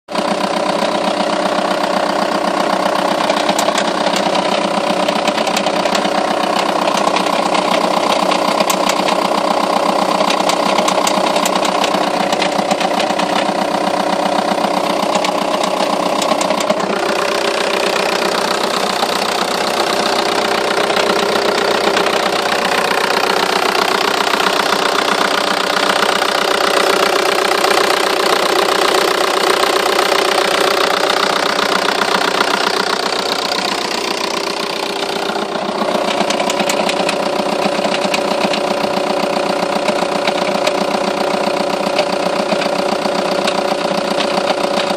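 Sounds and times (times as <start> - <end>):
diesel engine running: 0.1 - 44.9
engine knocking and clicking: 0.1 - 44.9.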